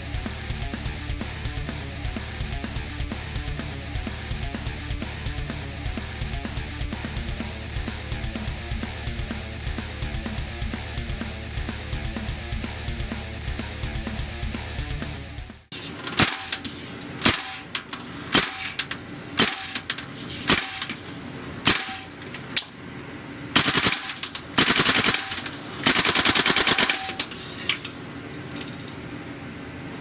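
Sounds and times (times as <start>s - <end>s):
suppressed airsoft gun shots: 15.8s - 22.7s, 23.6s - 27.4s.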